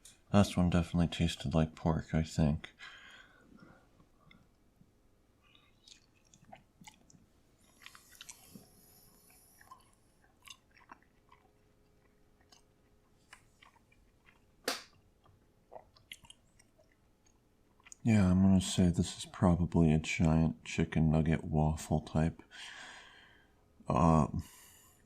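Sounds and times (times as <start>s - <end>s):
person chewing: 5.4s - 18.1s.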